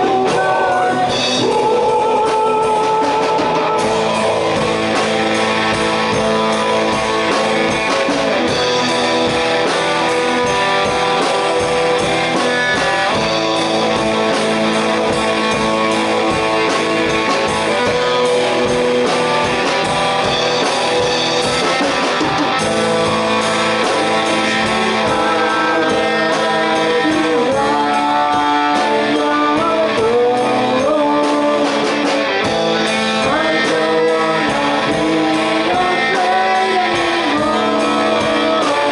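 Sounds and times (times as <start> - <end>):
electric guitar: 0.0 - 38.9
person singing: 0.0 - 38.9
rock band playing: 0.0 - 38.9.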